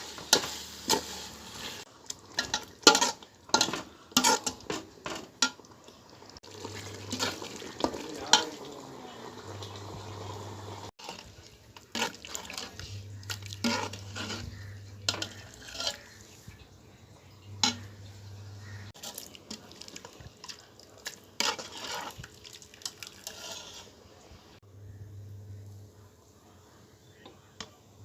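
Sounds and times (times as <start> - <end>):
metal utensils scraping a pot: 0.0 - 5.6, 6.5 - 8.7, 11.0 - 16.6, 17.4 - 20.7, 21.4 - 24.0.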